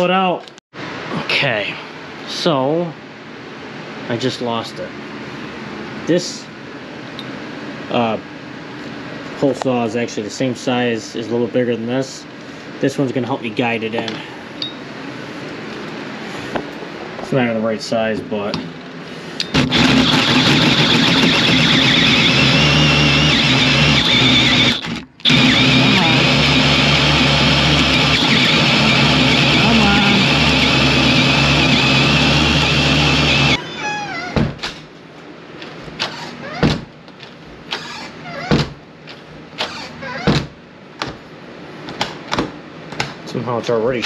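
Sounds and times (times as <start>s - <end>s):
power drill cutting hole in door: 19.5s - 34.1s, 36.0s - 36.7s, 37.7s - 38.6s, 39.6s - 40.4s
door squeaking: 33.5s - 34.8s, 36.0s - 36.9s, 37.7s - 38.8s, 39.6s - 40.5s.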